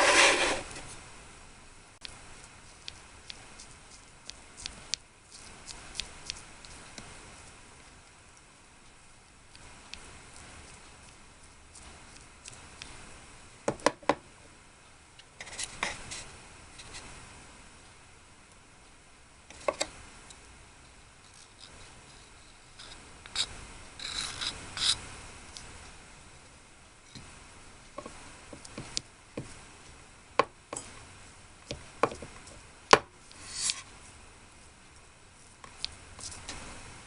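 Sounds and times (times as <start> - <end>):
short scraping rub: 0.0 - 0.9, 33.3 - 33.9.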